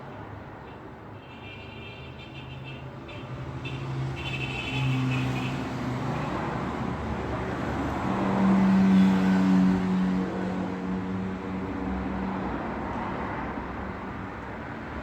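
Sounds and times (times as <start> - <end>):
vehicles passing: 3.2 - 15.0.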